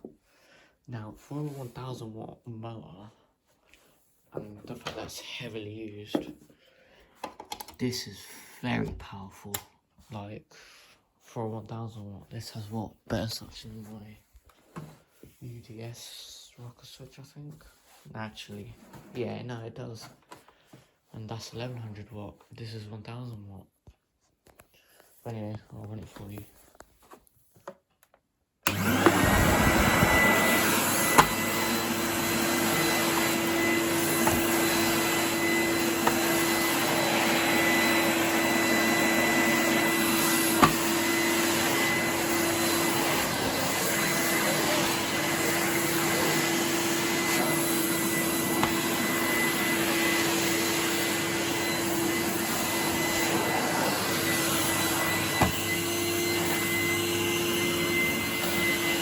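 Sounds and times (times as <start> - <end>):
vacuum cleaner motor humming: 28.6 - 59.0.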